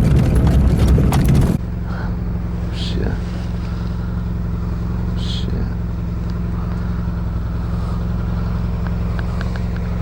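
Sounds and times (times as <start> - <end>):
vehicle rattling and knocking: 0.0 - 1.7
low engine hum: 0.0 - 10.0.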